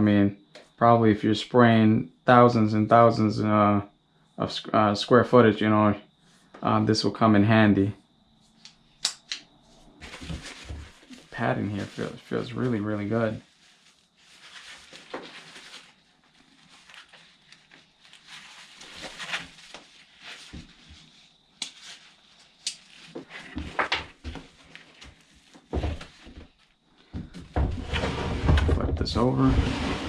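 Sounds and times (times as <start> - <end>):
straps and padding rustling: 9.7 - 28.8.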